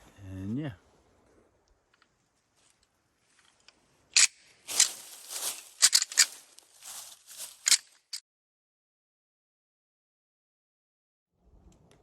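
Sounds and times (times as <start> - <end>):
antlers clacking and grinding: 4.2 - 6.4.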